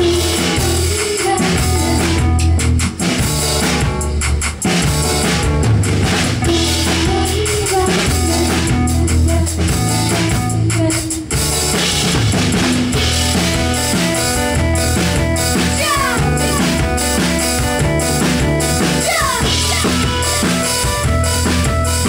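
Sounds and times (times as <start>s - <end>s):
bass drum and snare: 0.0s - 22.0s
live band playing: 0.0s - 22.0s.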